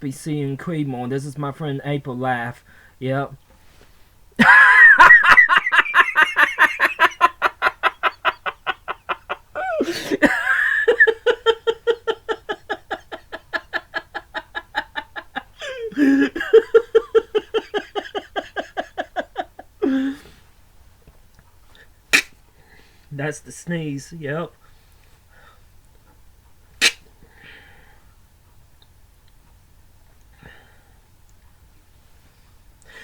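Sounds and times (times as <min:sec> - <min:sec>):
person cackling laughter: 0:04.4 - 0:20.3.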